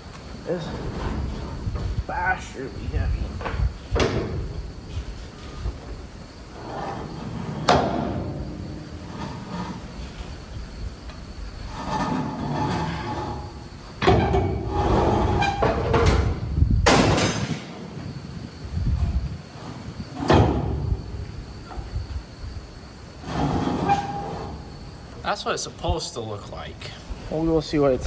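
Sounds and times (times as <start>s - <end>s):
metallic squealing: 6.5s - 10.7s, 11.3s - 16.6s, 23.2s - 25.2s
sharp clanks: 11.1s - 17.9s.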